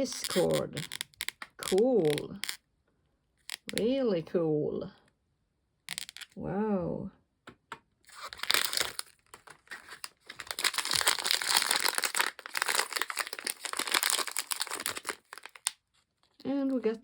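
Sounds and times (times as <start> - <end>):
plastic packaging crinkling: 0.0 - 2.6, 8.1 - 17.0.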